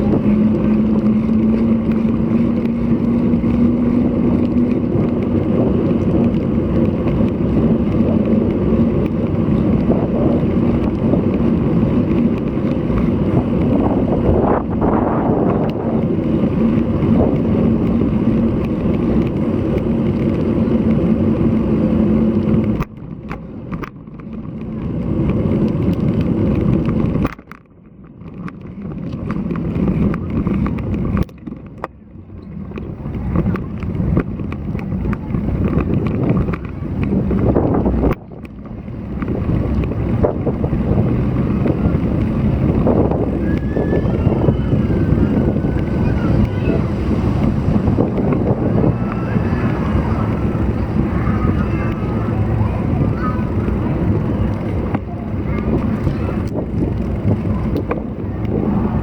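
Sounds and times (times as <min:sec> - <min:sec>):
wind and road noise: 0:00.0 - 0:59.0.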